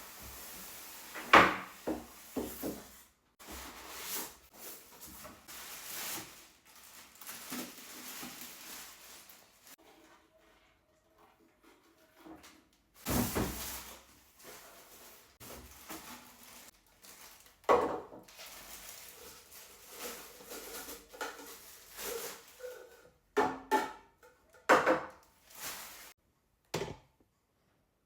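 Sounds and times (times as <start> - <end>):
packaging rustling: 0.4 - 9.8, 13.0 - 23.0.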